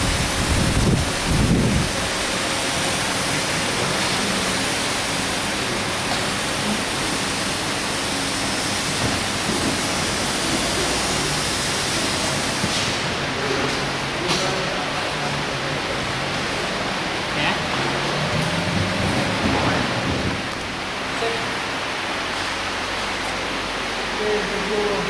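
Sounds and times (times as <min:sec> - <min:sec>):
welding arc hissing and crackling: 0:00.0 - 0:13.2.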